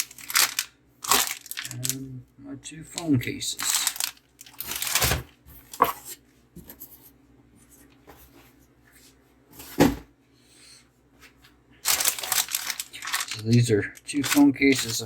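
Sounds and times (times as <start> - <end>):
plastic packaging rustling: 0.0 - 2.1, 2.9 - 6.2, 11.8 - 15.0
faint handling noise: 11.2 - 15.0.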